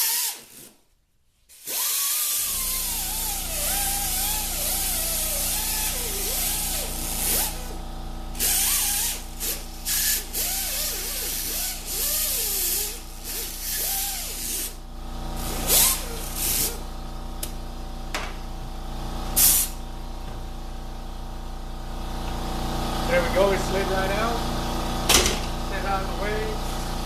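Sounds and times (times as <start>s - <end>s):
steady low hum: 2.5s - 27.0s
hissing spray bursts: 19.4s - 19.8s.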